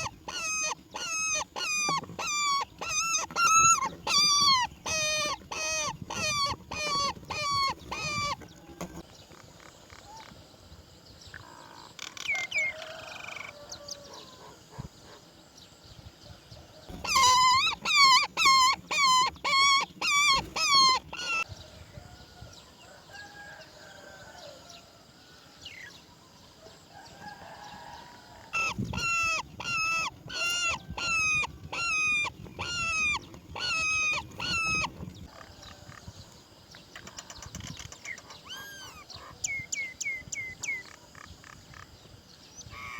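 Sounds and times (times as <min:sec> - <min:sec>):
roller bird calls: 0:00.0 - 0:09.0, 0:16.9 - 0:21.5, 0:28.5 - 0:35.5, 0:37.8 - 0:41.8.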